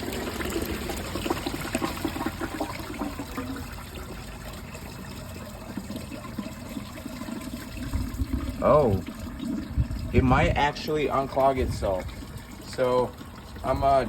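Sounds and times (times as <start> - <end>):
toilet flushing: 0.0 - 14.0.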